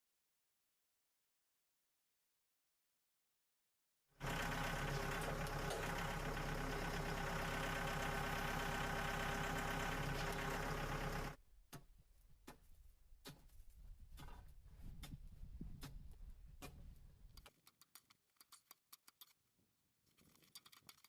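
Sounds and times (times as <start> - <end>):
engine running: 4.2 - 11.4.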